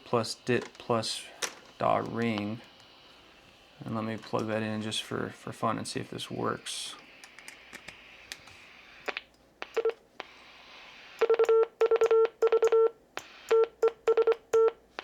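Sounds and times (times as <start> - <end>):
morse code beeps: 11.2 - 14.8.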